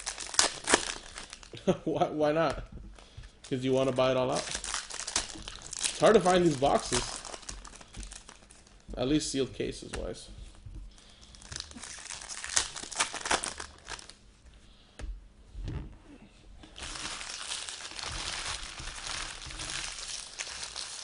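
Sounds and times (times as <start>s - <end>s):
plastic wrapping crinkling and tearing: 0.0s - 1.8s, 2.9s - 8.8s, 11.0s - 14.2s, 16.6s - 21.0s.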